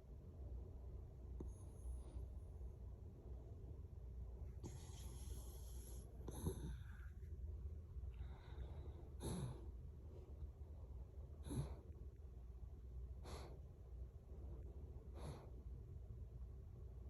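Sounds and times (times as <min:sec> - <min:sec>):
small dog snoring: 0:04.6 - 0:07.1, 0:09.2 - 0:09.7, 0:11.4 - 0:11.8.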